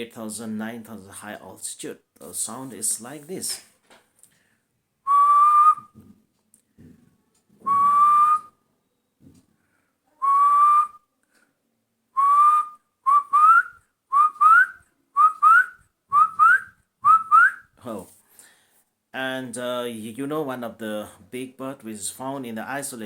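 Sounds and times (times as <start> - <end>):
person whistling bird call: 5.1 - 6.0, 7.7 - 8.6, 10.2 - 11.0, 12.2 - 17.7.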